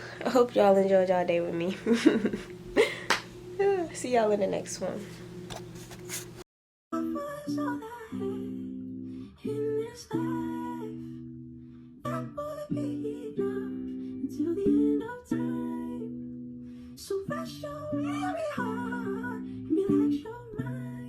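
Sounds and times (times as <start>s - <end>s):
person singing: 7.0s - 11.2s, 12.0s - 16.2s, 17.0s - 21.0s.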